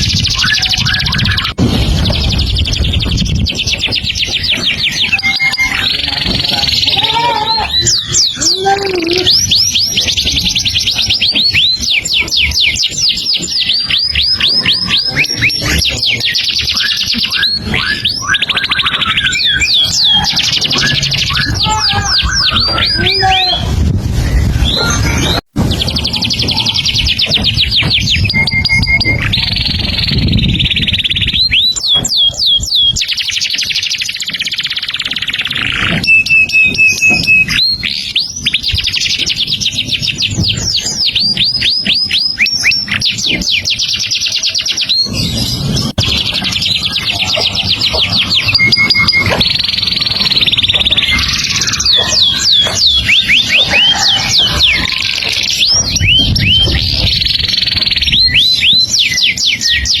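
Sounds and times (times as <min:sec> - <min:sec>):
songbird singing: 0:00.0 - 1:00.0.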